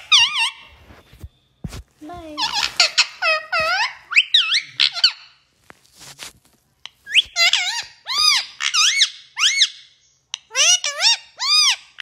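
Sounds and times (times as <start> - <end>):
parrot squeaky calls: 0.0 - 0.8, 2.3 - 5.4, 6.8 - 12.0.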